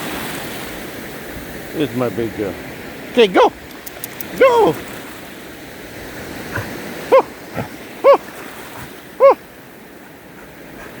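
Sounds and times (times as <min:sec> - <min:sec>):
surf washing: 0:00.0 - 0:11.0
dog yelping: 0:06.5 - 0:08.4, 0:09.2 - 0:09.5.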